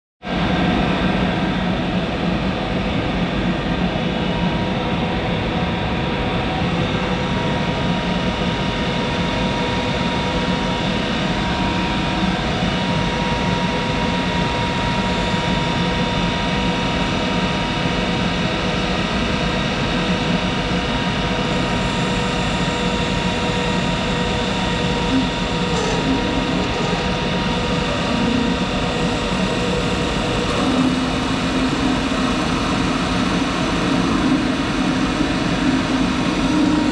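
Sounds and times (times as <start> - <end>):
lathe motor humming: 21.5 - 36.9.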